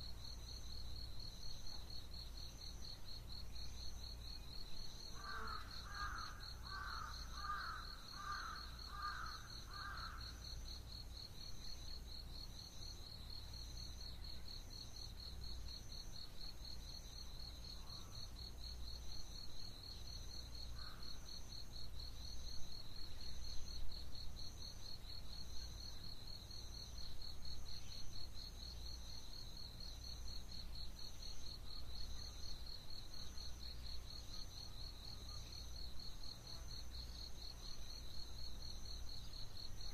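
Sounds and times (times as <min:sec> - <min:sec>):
crow cawing: 0:05.2 - 0:10.3.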